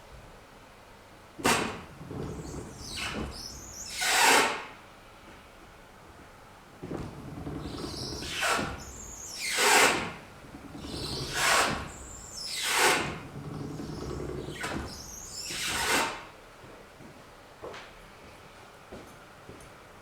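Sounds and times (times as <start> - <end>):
windshield wipers squeaking: 7.1 - 15.8.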